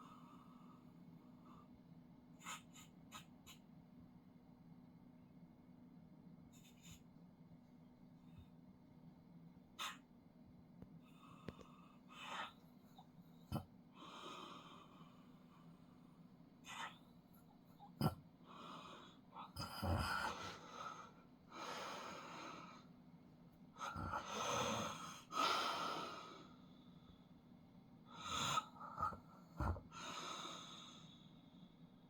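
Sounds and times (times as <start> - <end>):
sharp snorts: 2.4 - 3.6, 9.8 - 10.0, 16.6 - 17.0.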